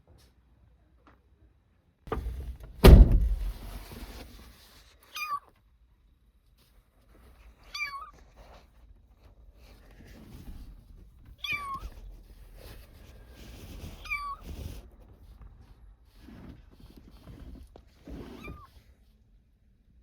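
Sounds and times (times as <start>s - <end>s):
loud thump: 2.1s - 3.8s
kitten meowing: 5.2s - 5.5s, 7.7s - 8.1s, 11.4s - 12.0s, 14.0s - 14.5s.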